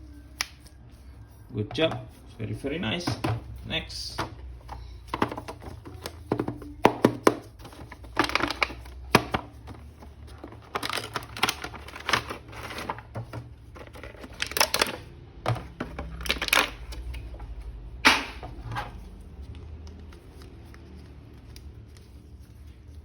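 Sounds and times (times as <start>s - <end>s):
plastic packaging crinkling: 7.5s - 15.1s, 15.7s - 17.0s.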